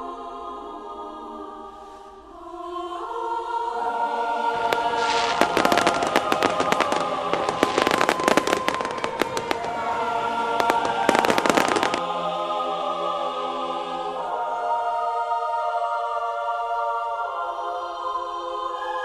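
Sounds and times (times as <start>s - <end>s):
choir-like music: 0.0s - 19.0s
fireworks crackling and popping: 4.6s - 12.0s.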